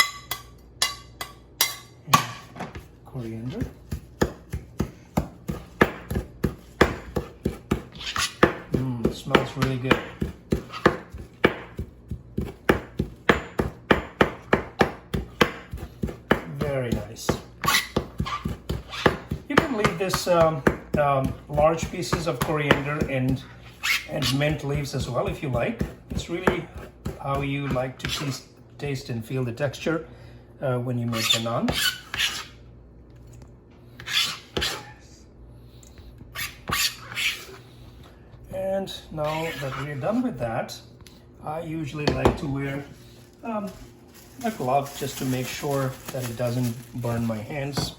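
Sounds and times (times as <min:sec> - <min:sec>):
knife chopping on cutting board: 0:03.5 - 0:28.4.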